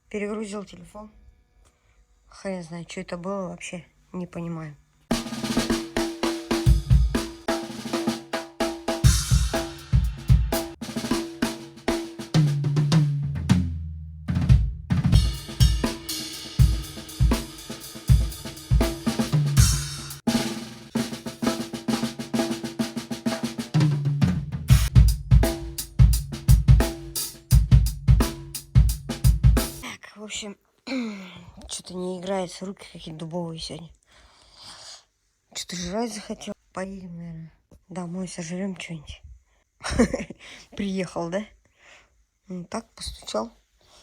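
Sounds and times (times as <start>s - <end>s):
acoustic drum kit playing: 5.1s - 29.8s
cymbal washing: 9.0s - 10.8s, 15.2s - 20.5s.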